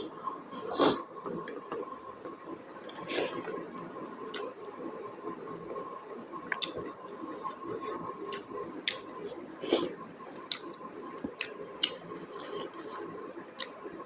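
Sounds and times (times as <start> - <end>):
person chewing food: 6.5 - 13.8.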